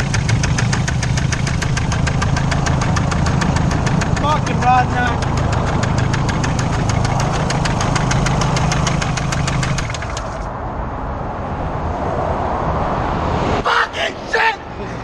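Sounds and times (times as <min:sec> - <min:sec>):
car engine idling: 0:00.0 - 0:10.5
engine rod knocking: 0:00.0 - 0:10.5.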